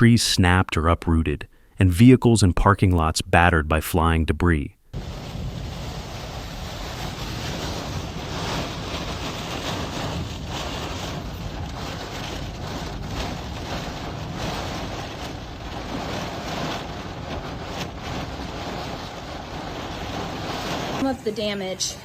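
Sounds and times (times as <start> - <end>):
wind blowing across microphone: 5.0 - 21.0.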